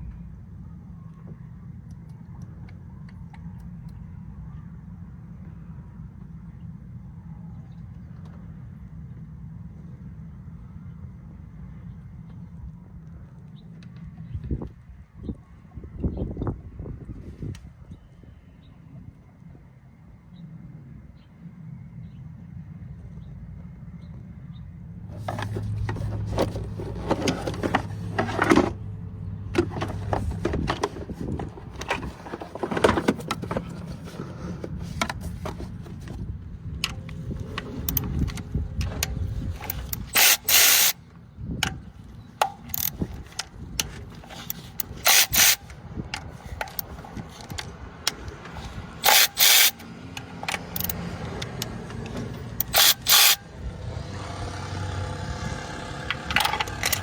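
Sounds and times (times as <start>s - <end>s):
tools clicking and rattling on metal: 25.2s - 28.8s, 36.8s - 41.0s, 42.4s - 53.4s, 56.3s - 57.0s.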